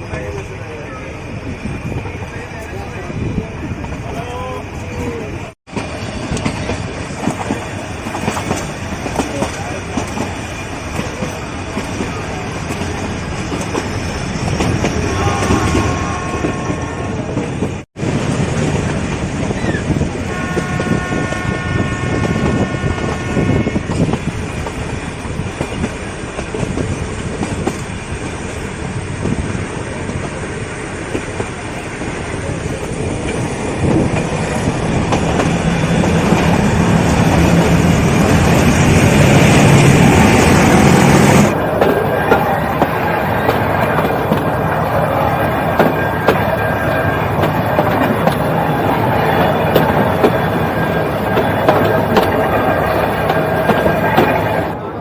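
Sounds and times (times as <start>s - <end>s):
locomotive horn blasts: 15.1s - 17.1s, 20.3s - 23.9s.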